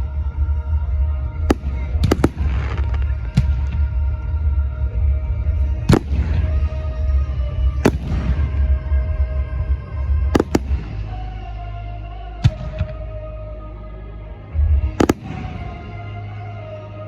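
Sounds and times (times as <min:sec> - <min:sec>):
music over loudspeakers: 0:00.0 - 0:17.0
fireworks bangs: 0:01.5 - 0:03.8, 0:07.8 - 0:08.7, 0:10.4 - 0:11.1, 0:15.0 - 0:16.0.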